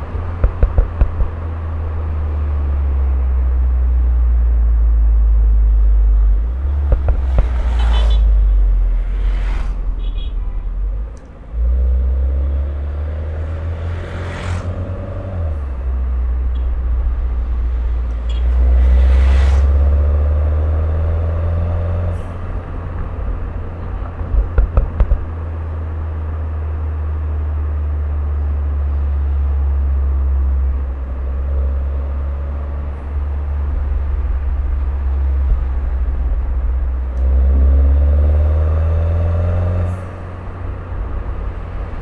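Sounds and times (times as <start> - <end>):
sharp exhaust pops: 0.0 - 1.8, 6.4 - 10.4, 22.1 - 25.9
car engine accelerating: 0.0 - 42.0.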